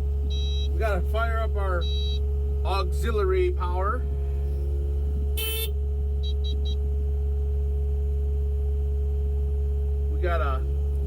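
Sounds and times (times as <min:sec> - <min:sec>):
diesel engine idling: 0:00.0 - 0:11.0
high beeps from cab controls: 0:00.3 - 0:01.0, 0:01.7 - 0:02.3, 0:05.4 - 0:06.8.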